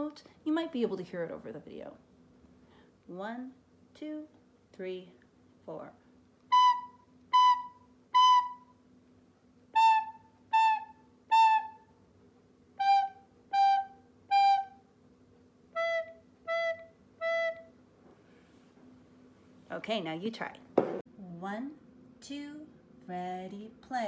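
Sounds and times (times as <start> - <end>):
recorder playing short notes: 6.5 - 8.7, 9.8 - 11.8, 12.8 - 14.8, 15.8 - 17.7.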